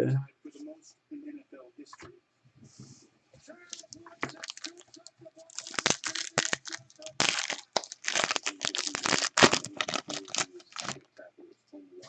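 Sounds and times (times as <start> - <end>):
plastic wrapper tearing: 3.7 - 11.0.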